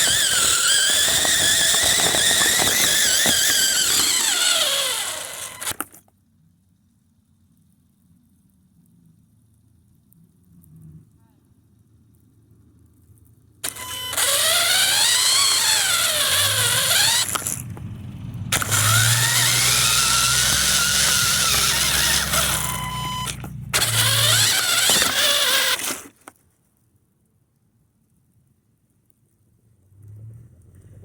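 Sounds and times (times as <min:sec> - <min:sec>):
rc car motor whining: 0:00.0 - 0:06.0, 0:13.6 - 0:17.8, 0:18.5 - 0:26.3.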